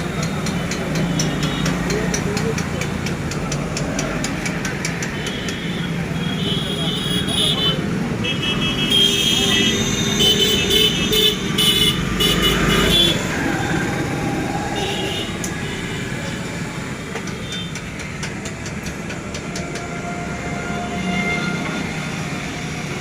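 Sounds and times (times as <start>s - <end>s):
motorcycle engine thumping: 15.4s - 19.9s.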